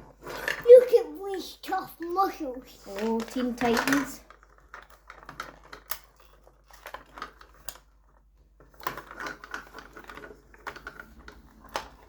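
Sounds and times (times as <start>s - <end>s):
plastic packaging clicks and crinkles: 2.8s - 12.0s.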